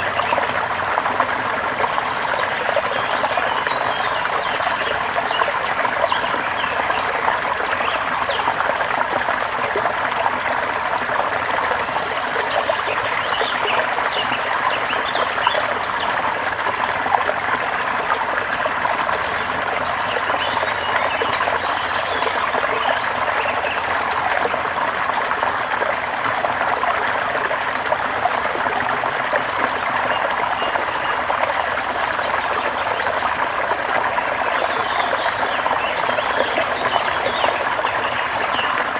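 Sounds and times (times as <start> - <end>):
stream water rushing: 0.0 - 38.9.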